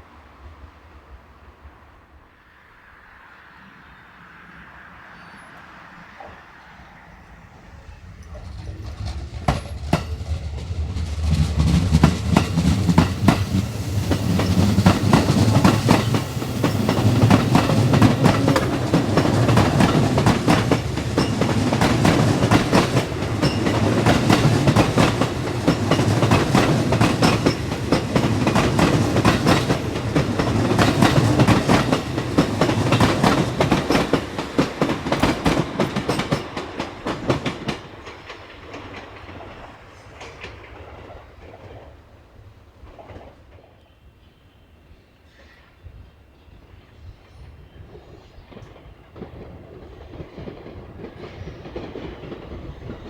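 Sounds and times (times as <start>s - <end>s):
train low rumble: 0.0s - 44.4s, 45.4s - 53.0s
train wheels clattering over joints: 8.0s - 41.9s.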